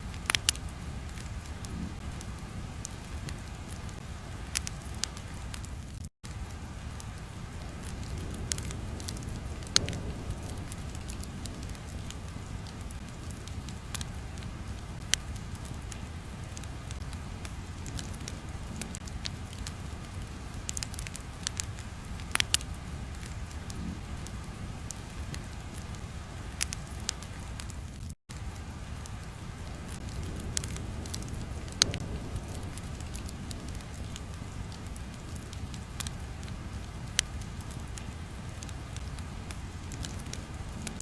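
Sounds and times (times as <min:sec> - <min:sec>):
sharp crackles and pops: 0:00.0 - 0:41.0
low rumble: 0:06.3 - 0:20.7, 0:28.6 - 0:37.4.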